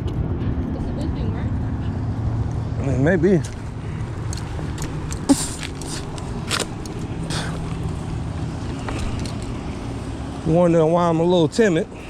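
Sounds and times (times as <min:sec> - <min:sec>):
brush crackling and snapping: 0:04.4 - 0:08.0.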